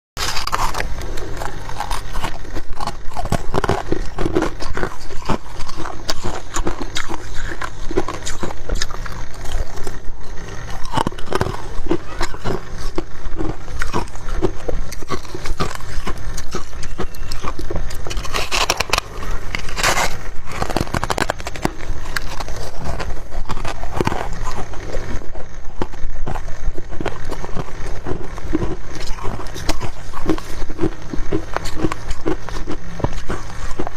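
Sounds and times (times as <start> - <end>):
person chewing crunchy frost: 0.2 - 33.9.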